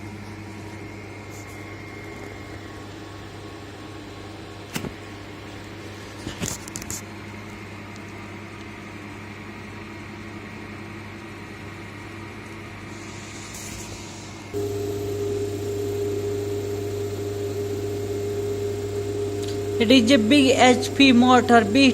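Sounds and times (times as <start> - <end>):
electrical hum: 7.1 - 21.9.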